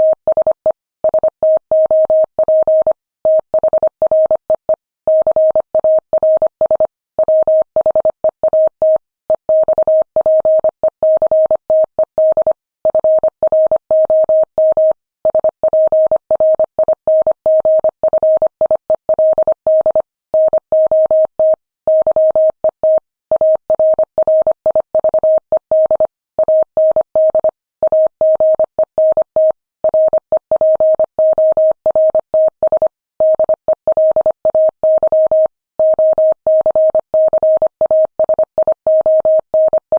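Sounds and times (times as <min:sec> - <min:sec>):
morse code beeps: 0:12.2 - 0:39.9.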